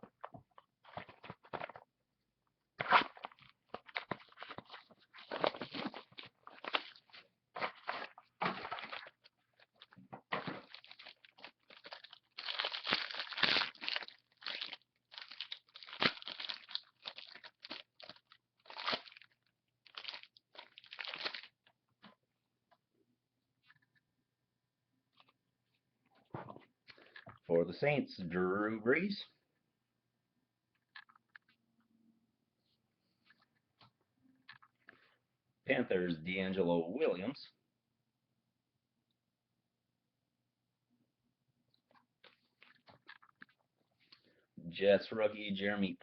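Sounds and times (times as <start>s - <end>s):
card packaging rustling and crinkling: 0.1s - 1.9s, 2.8s - 21.7s.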